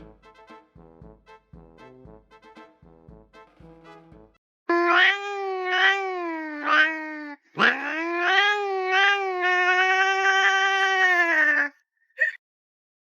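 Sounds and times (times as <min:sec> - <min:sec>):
cat yowling: 0:04.7 - 0:11.8.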